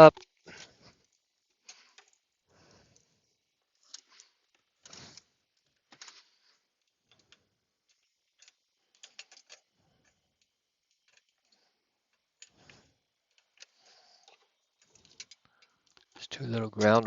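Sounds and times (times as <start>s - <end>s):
faint metal clicks and taps: 3.8s - 17.0s.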